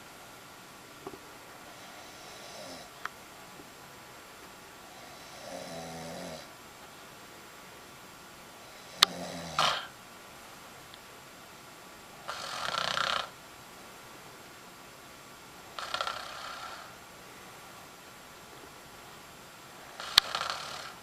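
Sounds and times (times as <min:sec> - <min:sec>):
woman snoring: 0:01.7 - 0:02.9, 0:04.8 - 0:06.5, 0:08.6 - 0:10.0, 0:12.2 - 0:13.4, 0:15.8 - 0:17.0, 0:19.9 - 0:21.0.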